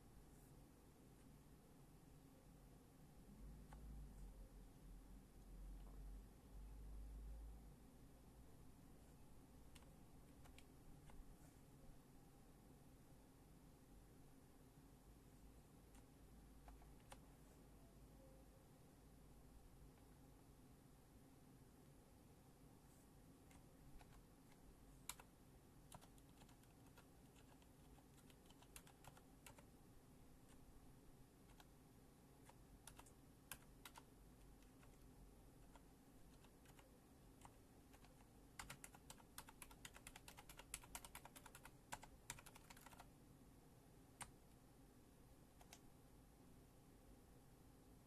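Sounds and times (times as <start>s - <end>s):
mechanical keyboard keystrokes: 28.2s - 29.6s, 32.8s - 34.1s, 37.4s - 43.1s.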